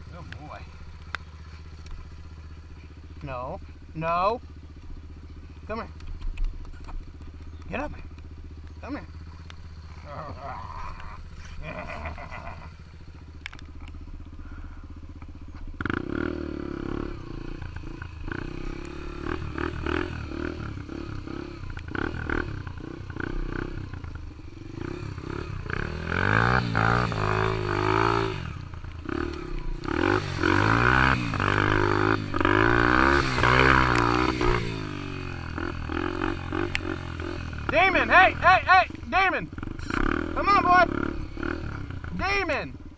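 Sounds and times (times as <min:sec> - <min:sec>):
dirt bike engine revving: 0:00.0 - 0:42.9.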